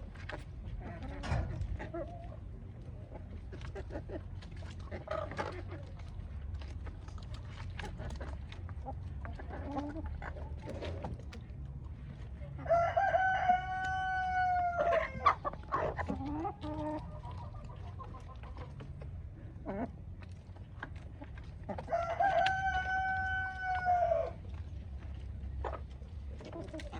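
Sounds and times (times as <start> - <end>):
hens clucking: 0.0 - 26.9
rooster crowing: 12.7 - 15.1, 21.9 - 24.4.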